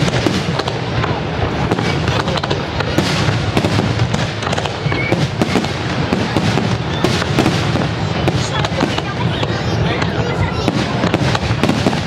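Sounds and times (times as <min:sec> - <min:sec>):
fireworks bangs and crackles: 0:00.0 - 0:12.0.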